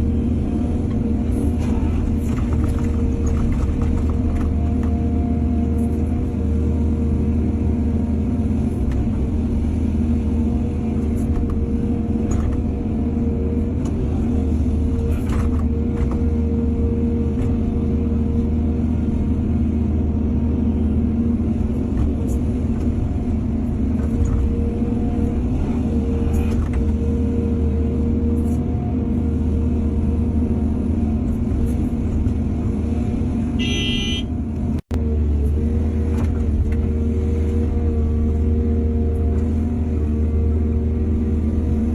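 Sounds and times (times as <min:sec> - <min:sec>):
excavator diesel engine running: 0:00.0 - 0:41.9.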